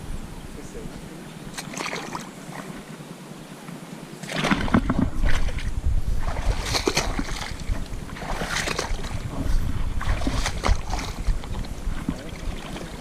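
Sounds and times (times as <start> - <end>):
wind buffeting microphone: 4.4 - 13.0.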